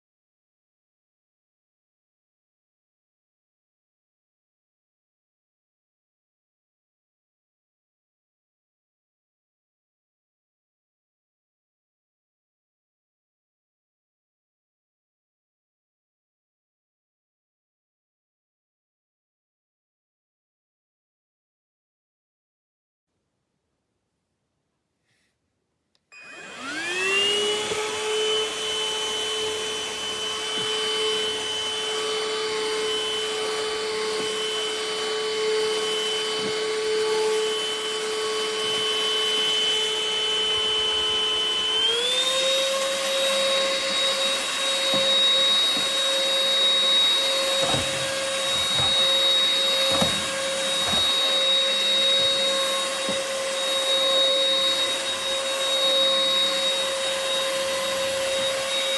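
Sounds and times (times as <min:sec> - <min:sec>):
vacuum motor whining: 0:26.2 - 0:58.9.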